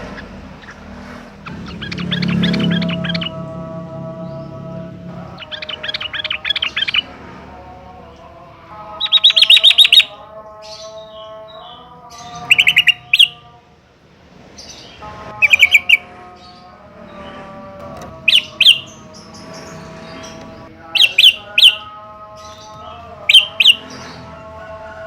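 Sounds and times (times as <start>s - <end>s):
bulbul calling: 0.0s - 3.6s, 5.2s - 7.1s, 8.9s - 13.4s, 14.6s - 16.7s, 18.0s - 24.3s
background music: 1.5s - 13.8s.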